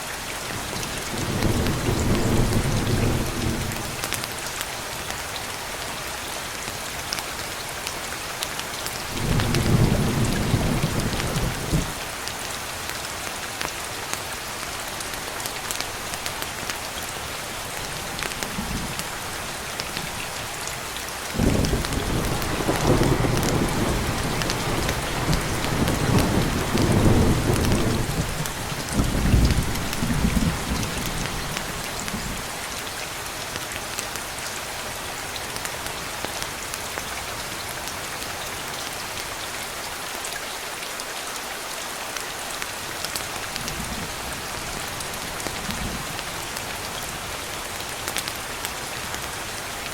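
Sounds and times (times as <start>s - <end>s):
steady rain: 0.0s - 49.9s
thunder rumbling: 21.4s - 32.3s.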